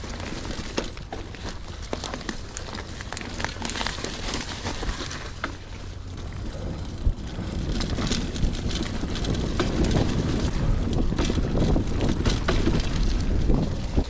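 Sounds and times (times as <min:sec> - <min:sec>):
bike clicks and rattles: 0:00.0 - 0:14.0
mountain bike rolling on dirt: 0:00.0 - 0:14.0
wind buffeting microphone: 0:03.6 - 0:14.0.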